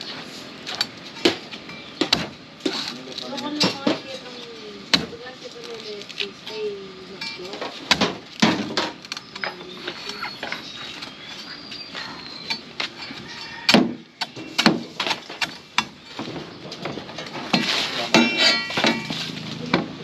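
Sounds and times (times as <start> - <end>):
machete chopping coconut husk: 2.0 - 4.0, 4.9 - 5.8, 7.8 - 10.3, 13.6 - 16.2.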